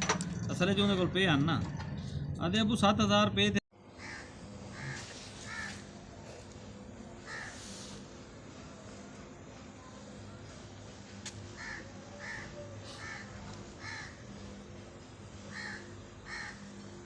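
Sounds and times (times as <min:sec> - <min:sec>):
steady low hum: 0:00.0 - 0:17.0
crow cawing: 0:04.0 - 0:05.9, 0:07.3 - 0:07.6, 0:11.6 - 0:14.5, 0:15.5 - 0:16.8.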